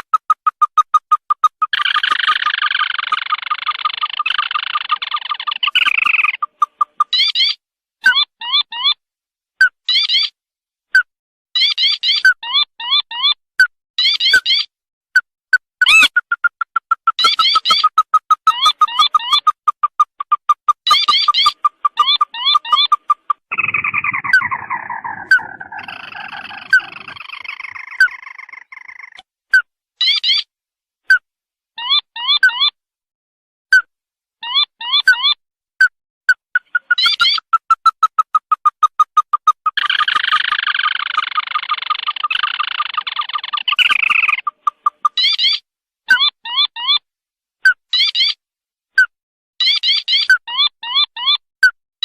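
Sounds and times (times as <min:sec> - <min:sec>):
crake calls: 0:00.0 - 0:07.6, 0:15.8 - 0:29.2, 0:36.6 - 0:45.6
crake piping notes: 0:15.8 - 0:27.3
upward-slurred bird notes: 0:15.9 - 0:29.2, 0:39.7 - 0:45.3.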